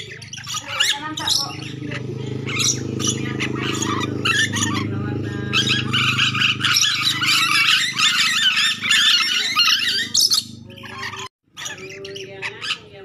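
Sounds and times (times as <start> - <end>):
lorikeets squawking and screeching: 0.0 - 13.0
steady low hum: 1.0 - 11.3.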